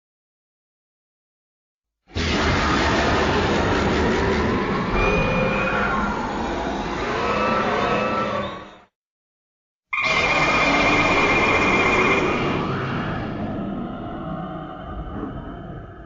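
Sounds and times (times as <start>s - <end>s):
monster sound effect: 2.1s - 8.7s, 10.0s - 16.0s.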